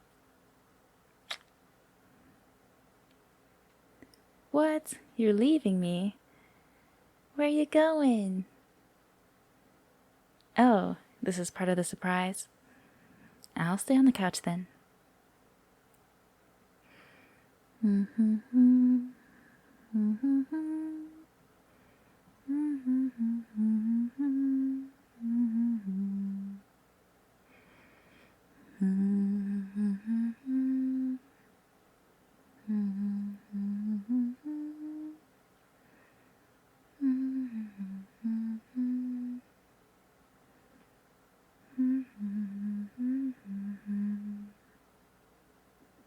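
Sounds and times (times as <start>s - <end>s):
woman humming: 17.8s - 19.3s, 19.9s - 21.3s, 22.4s - 26.7s, 28.7s - 31.3s, 32.6s - 35.2s, 37.0s - 39.5s, 41.6s - 44.6s.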